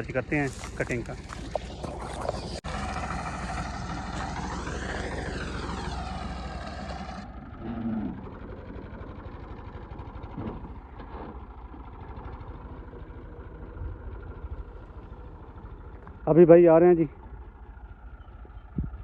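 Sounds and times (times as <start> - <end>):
tractor diesel engine running: 0.0 - 19.0.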